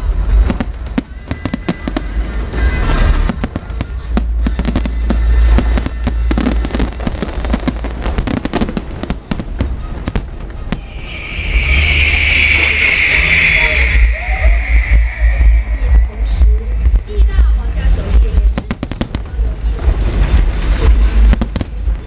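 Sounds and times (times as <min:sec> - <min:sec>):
fireworks bangs and crackles: 0:00.0 - 0:22.0
music playing: 0:00.0 - 0:22.0
deep rumble: 0:02.1 - 0:22.0
loud hiss: 0:10.6 - 0:16.4.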